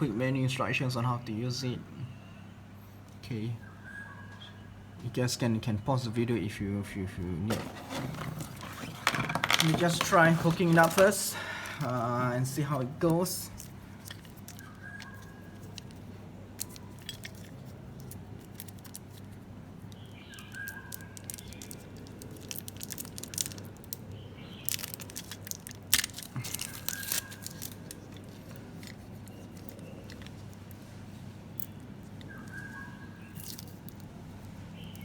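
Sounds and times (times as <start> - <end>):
plastic parts clicking and rattling: 7.5 - 11.9, 12.7 - 24.0, 24.6 - 30.8.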